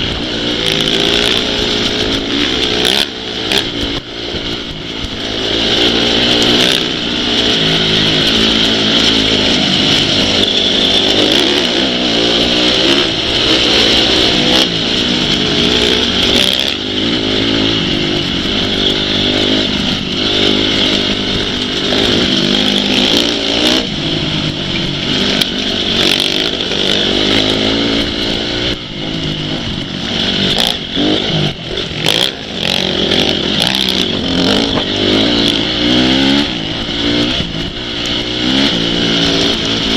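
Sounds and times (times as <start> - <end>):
motorcycle engines revving: 0.0 - 39.9.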